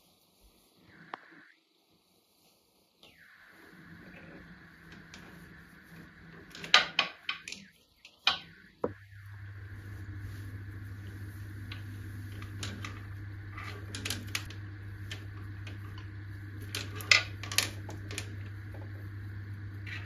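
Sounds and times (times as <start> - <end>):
steady low hum: 3.0 - 7.6, 8.2 - 20.0
small objects clicking and knocking: 12.3 - 13.0, 13.6 - 14.5, 15.1 - 18.8.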